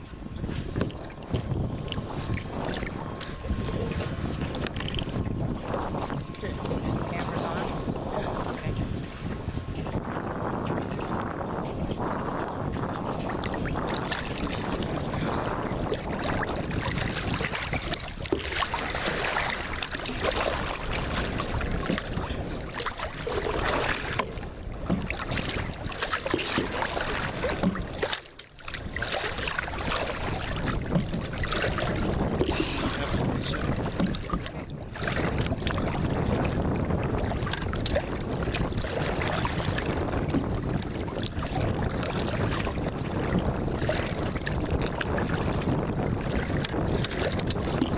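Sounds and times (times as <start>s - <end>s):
water noise: 0.0s - 47.9s
wind buffeting microphone: 0.0s - 47.9s
small splashes: 15.9s - 35.9s.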